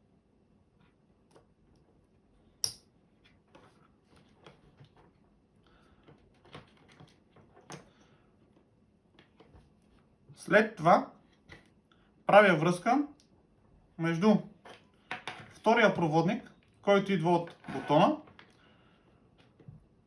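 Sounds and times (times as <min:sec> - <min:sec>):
sharp connector click: 0:02.6 - 0:02.8.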